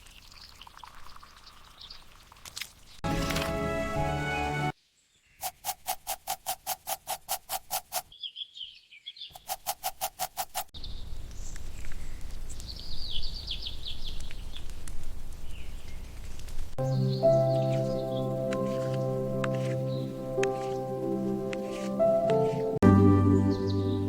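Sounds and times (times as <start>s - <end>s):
outdoor background: 0.0s - 24.0s
fast pulsing sound: 5.4s - 8.1s, 9.3s - 10.7s
birds chirping: 10.5s - 14.7s, 16.8s - 24.0s.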